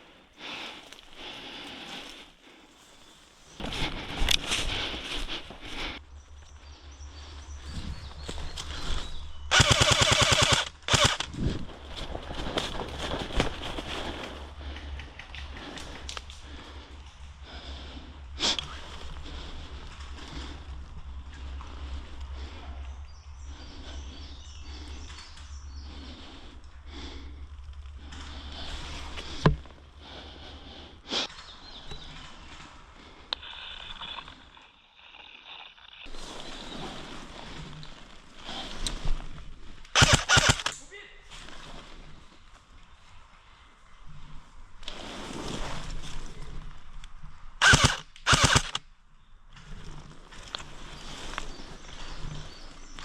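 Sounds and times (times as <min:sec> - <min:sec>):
footsteps in woodland: 0:00.0 - 0:53.0
low rumble on microphone: 0:03.5 - 0:09.5
airsoft rifle full-auto bursts: 0:09.5 - 0:11.4, 0:40.0 - 0:40.8, 0:47.6 - 0:48.8.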